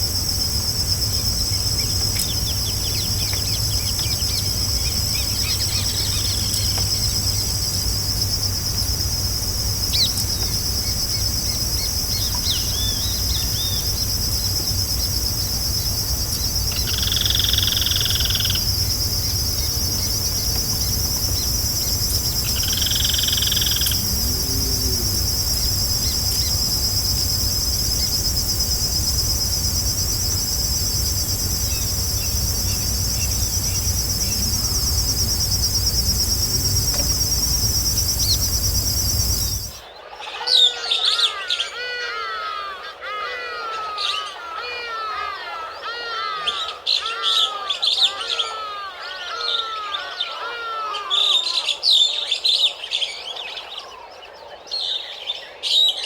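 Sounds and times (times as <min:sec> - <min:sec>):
high-pitched insect chorus: 0:00.0 - 0:39.9
loud animal calls: 0:16.7 - 0:39.8.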